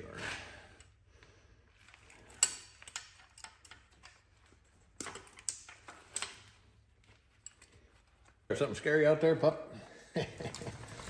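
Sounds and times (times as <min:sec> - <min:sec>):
metallic clicks of hand tools: 0:02.1 - 0:04.2, 0:05.0 - 0:06.5.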